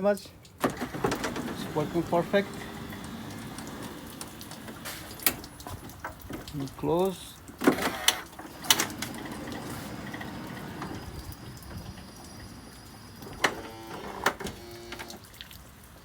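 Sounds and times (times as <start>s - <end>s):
sliding door motor whirring: 0.6s - 5.4s, 7.6s - 15.2s
door latching clunks: 0.6s - 6.5s.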